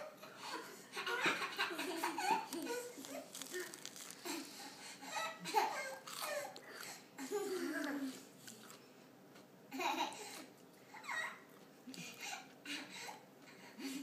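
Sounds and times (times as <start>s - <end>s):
small child giggling: 0.0s - 3.3s, 5.1s - 6.6s, 7.2s - 8.3s, 9.7s - 10.4s
people laughing: 0.4s - 3.0s.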